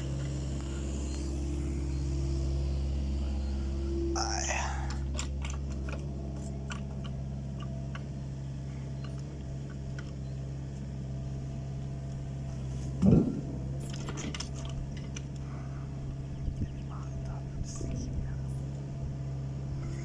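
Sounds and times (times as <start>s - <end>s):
excavator diesel engine running: 0.0s - 20.0s
faint clicks and rattles: 4.9s - 8.3s, 12.0s - 15.5s.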